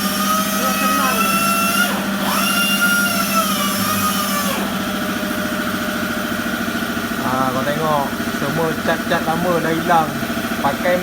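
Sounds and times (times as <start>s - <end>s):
angle grinder wire brush whining: 0.0s - 5.4s.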